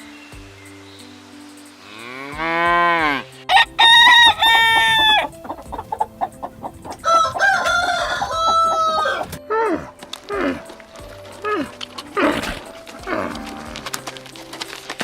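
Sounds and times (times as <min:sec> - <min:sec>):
rooster crowing: 0:03.5 - 0:05.8, 0:07.0 - 0:09.4
cow lowing: 0:08.0 - 0:15.0.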